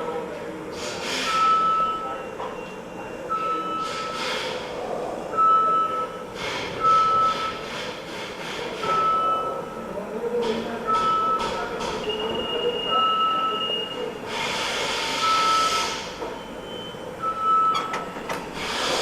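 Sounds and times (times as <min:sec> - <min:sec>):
steady high beep: 0:01.3 - 0:04.2, 0:05.3 - 0:06.2, 0:08.9 - 0:09.8, 0:10.9 - 0:14.1, 0:15.2 - 0:17.9.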